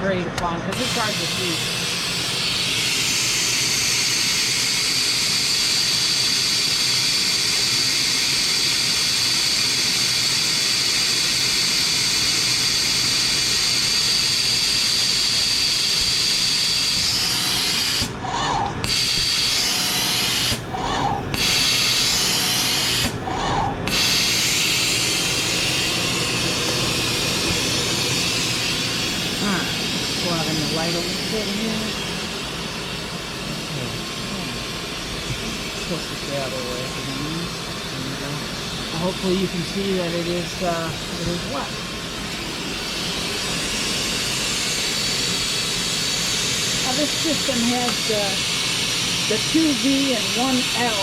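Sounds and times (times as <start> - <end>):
flux sprayer high-pitched hiss: 23.8 - 32.9, 38.0 - 51.0.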